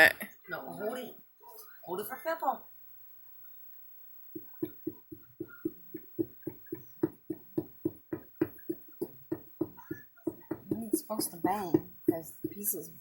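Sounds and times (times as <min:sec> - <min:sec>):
pick tool tapping plaster: 0:04.3 - 0:13.0.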